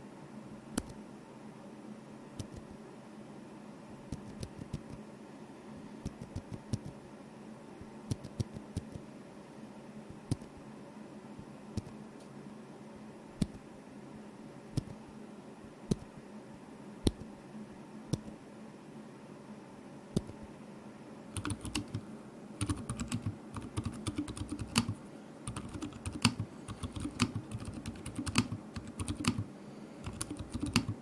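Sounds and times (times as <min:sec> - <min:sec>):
mechanical keyboard typing: 0:02.4 - 0:02.7, 0:06.1 - 0:06.9, 0:08.1 - 0:09.0, 0:11.8 - 0:12.0, 0:21.4 - 0:22.0, 0:22.6 - 0:31.0.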